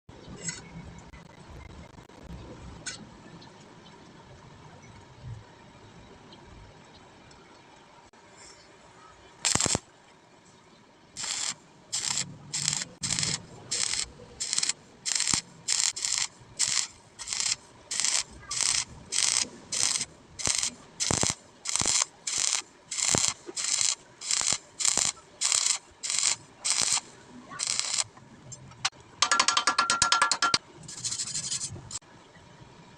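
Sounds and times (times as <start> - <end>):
welding arc crackling hiss: 9.4 - 9.8, 11.2 - 28.1.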